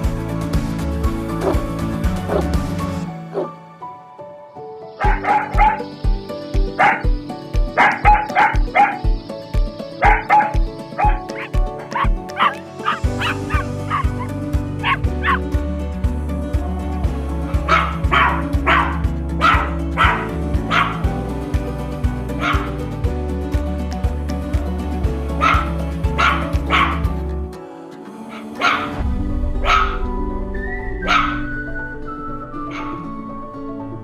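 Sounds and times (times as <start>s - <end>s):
music with steady beat: 0.0s - 3.6s, 5.0s - 27.6s
dog barking and yipping: 5.0s - 6.0s, 6.7s - 7.2s, 7.8s - 9.2s, 10.0s - 15.4s, 17.7s - 21.0s, 22.4s - 22.8s, 25.4s - 27.0s, 28.3s - 29.0s, 29.6s - 30.0s, 31.0s - 31.5s, 32.7s - 33.0s.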